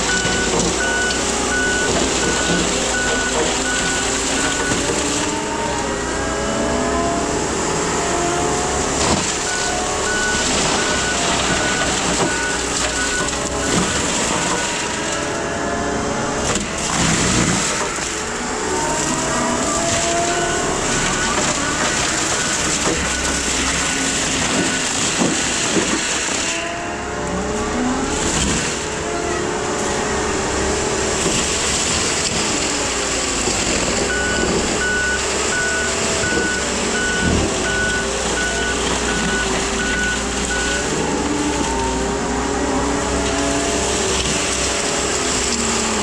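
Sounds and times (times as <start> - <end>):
backup alarm beeping: 0.0 - 5.2, 9.4 - 14.8, 34.1 - 41.9
skid steer mulcher running: 0.0 - 46.0.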